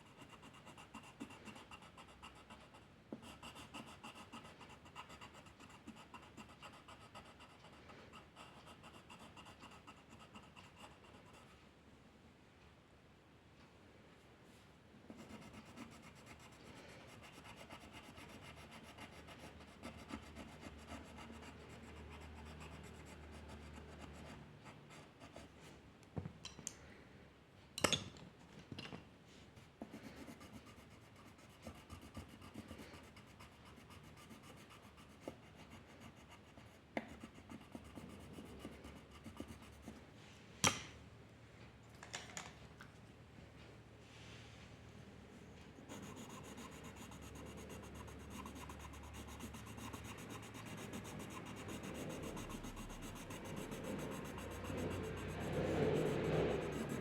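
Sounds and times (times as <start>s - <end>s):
drawing tool scratching on paper: 0.0s - 11.6s, 15.2s - 25.6s, 29.9s - 40.0s, 45.8s - 57.0s.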